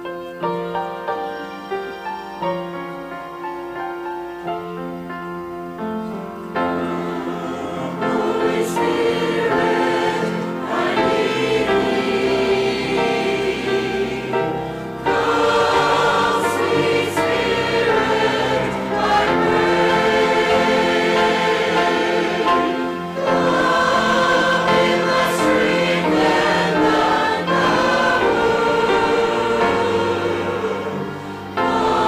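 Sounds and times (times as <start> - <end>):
instrumental accompaniment: 0.0 - 32.0
group singing a hymn: 6.5 - 32.0.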